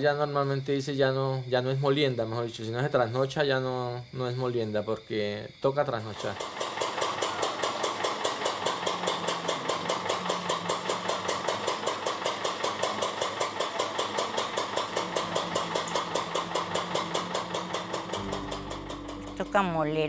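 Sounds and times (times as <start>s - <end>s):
rhythmic mechanical clatter: 6.1s - 20.0s
gasoline engine running: 6.3s - 20.0s.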